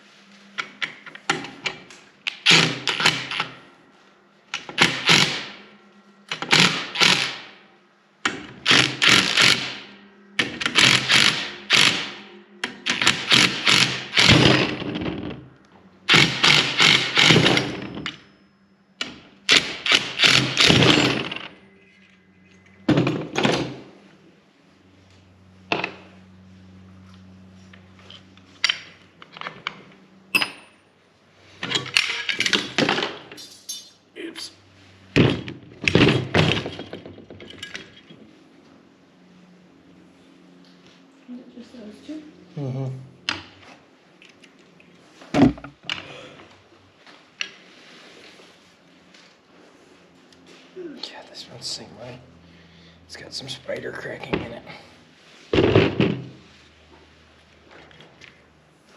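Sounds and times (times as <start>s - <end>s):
metal parts clanking: 31.6s - 34.0s, 35.2s - 38.3s.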